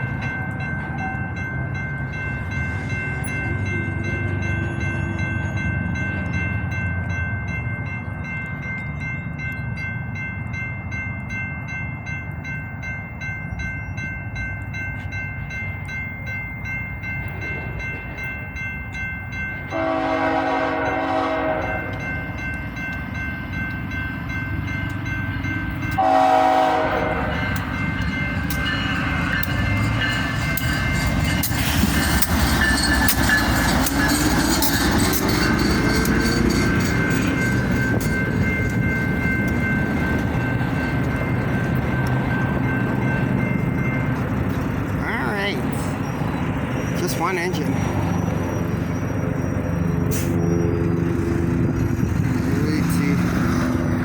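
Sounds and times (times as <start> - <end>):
diesel locomotive rumbling: 0.0 - 54.0
locomotive air horn blasts: 19.7 - 22.1, 26.0 - 27.6.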